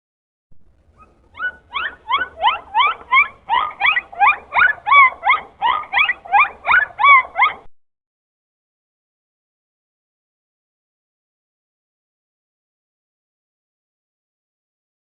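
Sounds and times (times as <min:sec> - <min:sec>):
dolphin whistling: 0:01.0 - 0:07.7.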